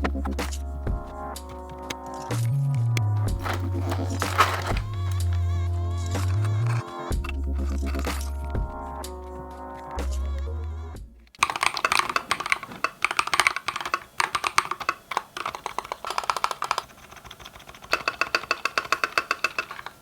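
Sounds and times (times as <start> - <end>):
mechanical keyboard typing: 11.4 - 20.0.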